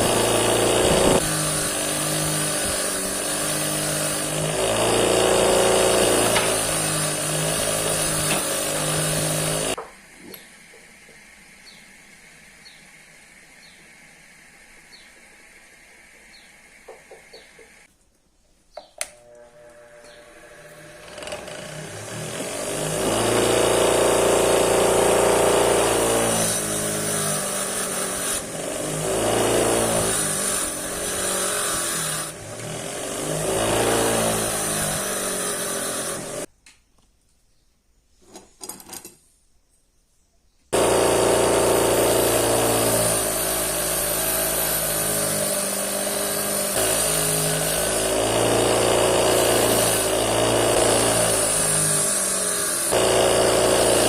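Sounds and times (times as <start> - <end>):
power tool motor running: 0.0 - 9.8, 19.0 - 36.5, 40.8 - 54.0.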